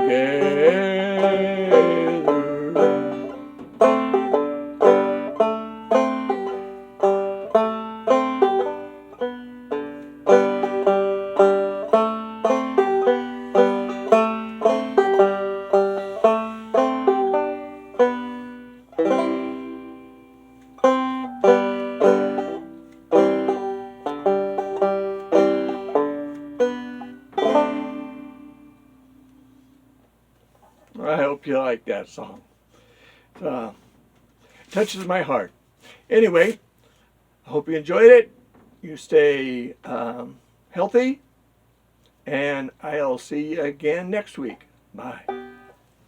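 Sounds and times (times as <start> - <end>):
banjo picking: 0.0 - 29.8, 34.5 - 35.2, 44.3 - 45.8.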